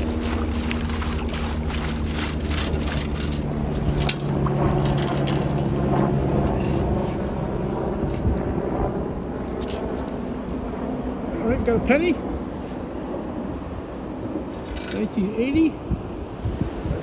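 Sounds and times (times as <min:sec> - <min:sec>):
sand scoop rattling grit: 0:00.0 - 0:05.7, 0:14.6 - 0:15.3
water sloshing: 0:00.0 - 0:07.4
steady low rumble: 0:00.0 - 0:15.1.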